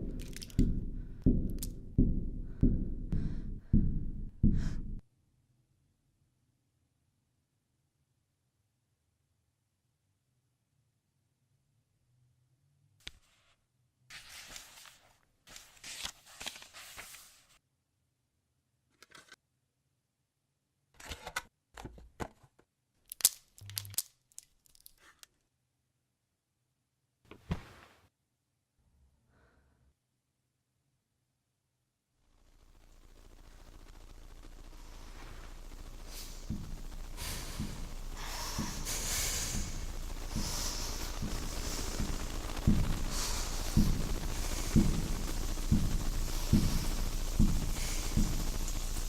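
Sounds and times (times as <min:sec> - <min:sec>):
person breathing hard: 0:00.4 - 0:05.0, 0:35.5 - 0:49.0
rustling and scraping handling noises: 0:13.2 - 0:17.6.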